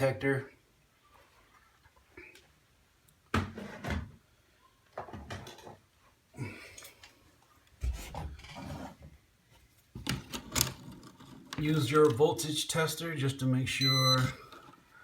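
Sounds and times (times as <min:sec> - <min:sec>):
plastic rubbing and scraping: 0:07.8 - 0:09.2.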